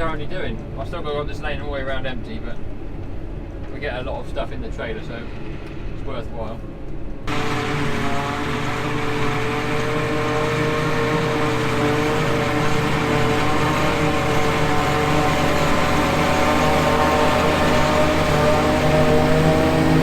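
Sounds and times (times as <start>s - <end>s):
tractor engine revving: 7.3s - 20.0s.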